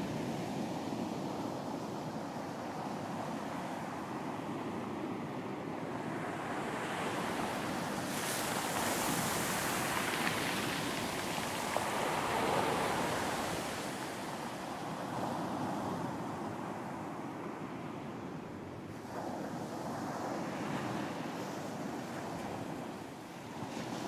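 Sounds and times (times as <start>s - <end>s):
sea waves breaking: 6.5s - 15.6s.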